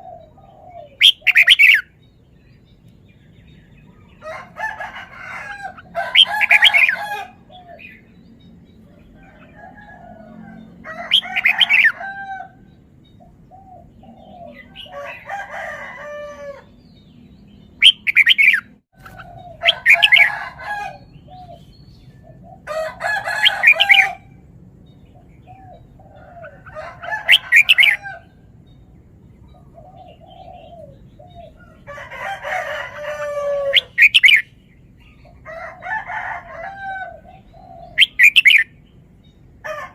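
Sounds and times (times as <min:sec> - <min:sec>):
bulbul singing warbled phrases: 0:00.0 - 0:04.2, 0:05.8 - 0:08.9, 0:11.0 - 0:12.0, 0:16.6 - 0:22.6, 0:37.4 - 0:39.4.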